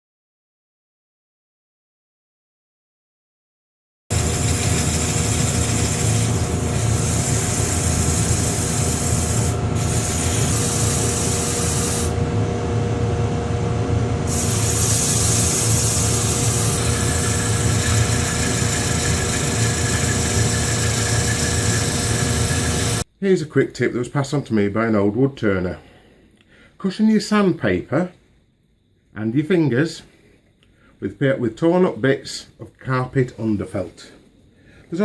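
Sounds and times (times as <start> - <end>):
sandpaper hissing on spinning wood: 4.1 - 12.2, 14.2 - 23.0
wood lathe motor running: 4.1 - 23.0.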